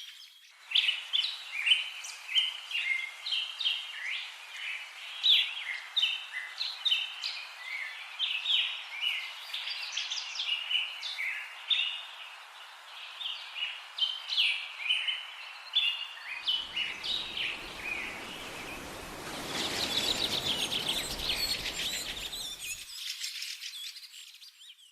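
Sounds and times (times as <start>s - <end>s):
songbirds chirping: 0.0s - 24.9s
low rushing noise: 16.5s - 22.8s.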